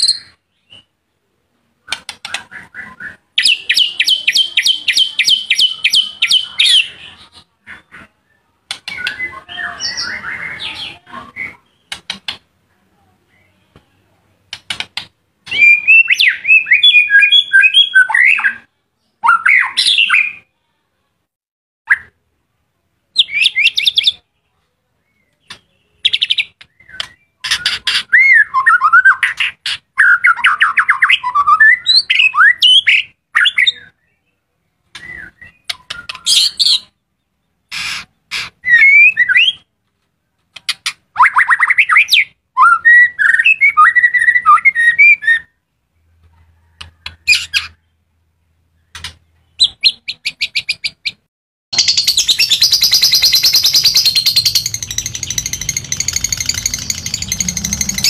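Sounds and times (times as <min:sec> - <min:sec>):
songbird singing: 0:00.0 - 0:14.8, 0:15.4 - 0:20.5, 0:23.1 - 0:39.7, 0:40.5 - 0:58.0
high chattering: 0:51.8 - 0:58.0.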